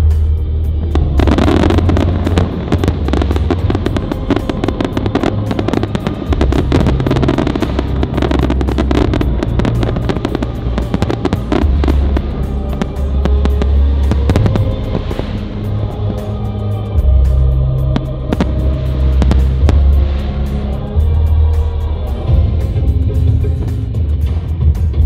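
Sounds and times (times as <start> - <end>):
loud music with heavy bass: 0.0 - 25.0
fireworks crackling and popping: 0.9 - 20.7.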